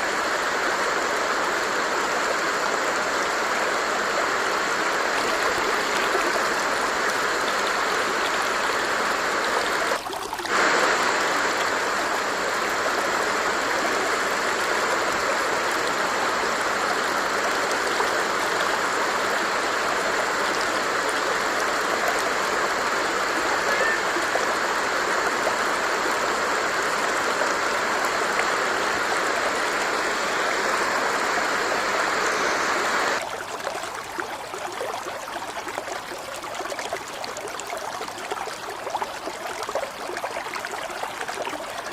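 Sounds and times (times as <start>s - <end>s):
water stream flowing: 0.0s - 41.9s.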